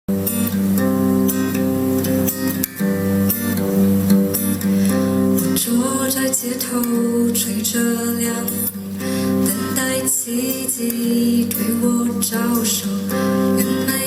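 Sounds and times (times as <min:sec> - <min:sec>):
acoustic guitar strumming chords: 0:00.1 - 0:14.0.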